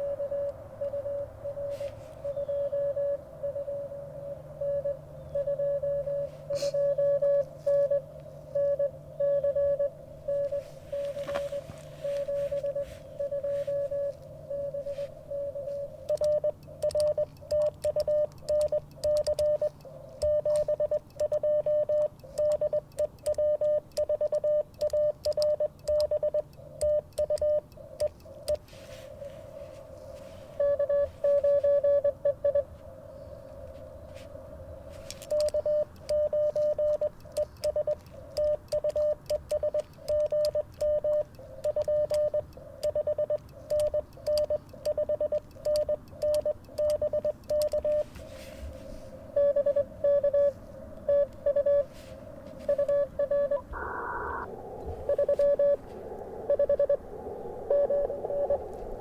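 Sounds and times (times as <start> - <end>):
morse code tone: 0.0 - 29.2, 30.5 - 32.8, 35.0 - 48.7, 49.3 - 59.0
radio receiver hiss: 9.7 - 17.2, 33.5 - 59.0.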